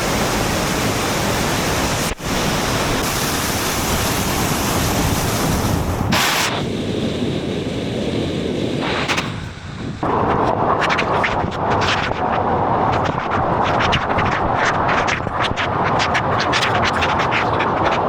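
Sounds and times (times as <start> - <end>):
waterfall rushing: 0.0 - 6.7.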